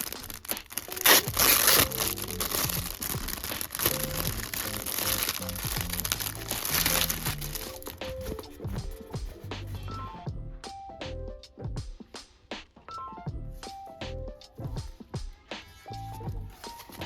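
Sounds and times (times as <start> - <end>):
packaging crinkling: 0.0 - 9.2, 16.5 - 17.0
background music: 0.0 - 17.0.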